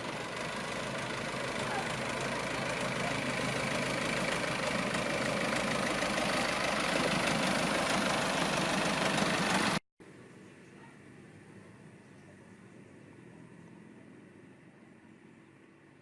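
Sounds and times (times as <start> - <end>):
train diesel engine rumbling: 0.0 - 9.8.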